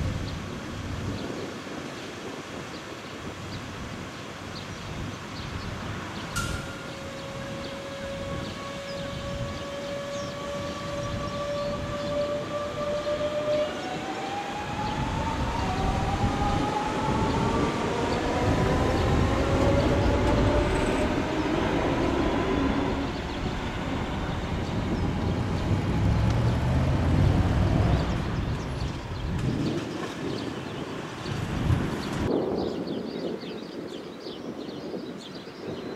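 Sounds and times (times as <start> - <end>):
train wheel and running noise: 5.9 - 7.8, 13.3 - 26.4
electric train drive whining: 6.4 - 30.1.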